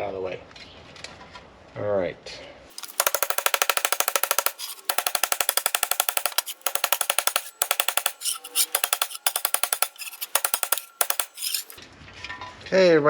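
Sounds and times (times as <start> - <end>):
hammer ringing on steel: 2.8 - 11.8.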